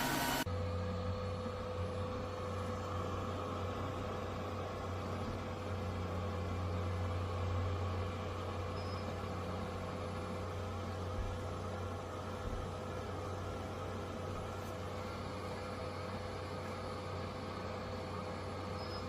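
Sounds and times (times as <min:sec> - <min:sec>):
vacuum mop motor hum: 0:00.0 - 0:00.5.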